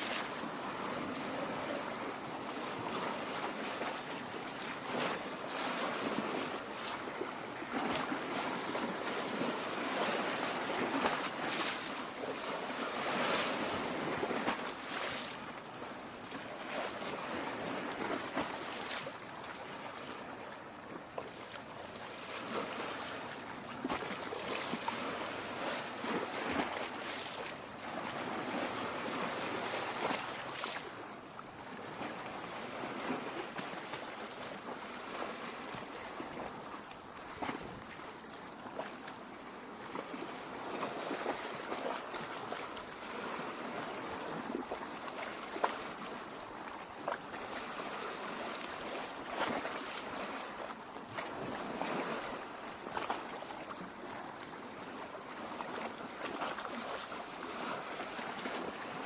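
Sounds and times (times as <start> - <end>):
water lapping at shore: 0.0 - 59.0.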